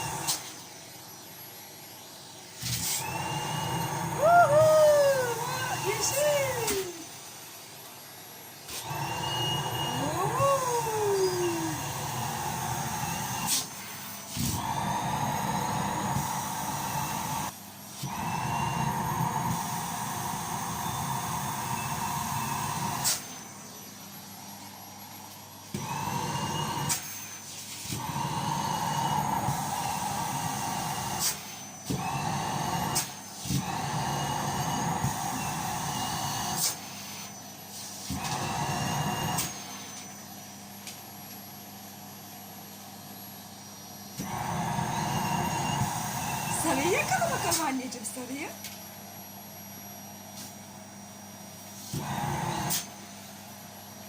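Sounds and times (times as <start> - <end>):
toy vacuum motor whining: 0.0 - 0.6, 2.6 - 7.2, 8.7 - 23.6, 25.8 - 40.2, 44.1 - 48.8.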